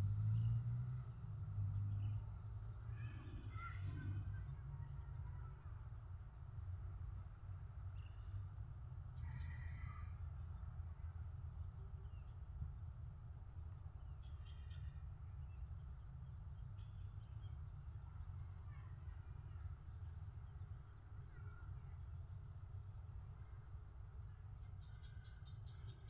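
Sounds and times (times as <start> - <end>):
faint bird chirps: 7.9 - 8.5, 9.1 - 10.4, 14.0 - 17.8, 24.3 - 26.0.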